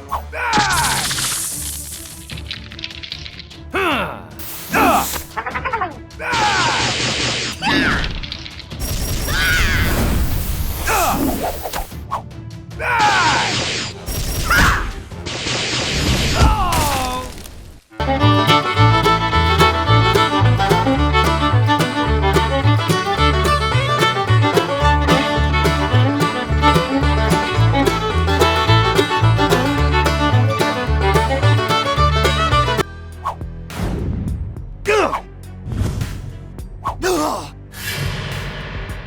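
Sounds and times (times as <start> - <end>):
upbeat music with bass beat: 18.0 - 32.8.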